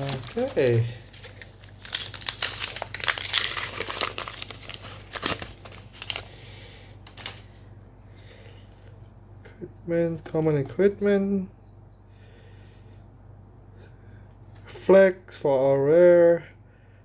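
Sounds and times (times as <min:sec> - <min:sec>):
wrapper tearing and crinkling: 0:00.0 - 0:06.4.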